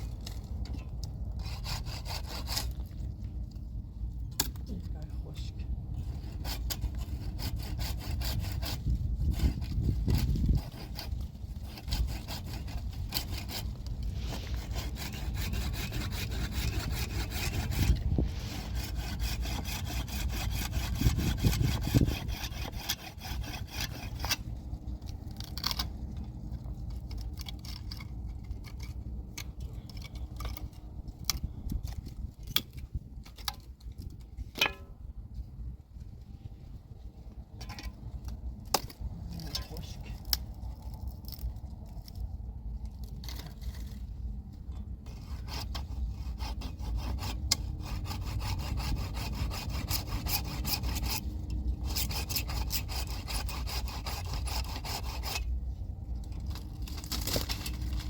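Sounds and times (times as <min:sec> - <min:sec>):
saw cutting through wood: 0:01.3 - 0:03.0, 0:06.0 - 0:24.5, 0:45.1 - 0:55.5.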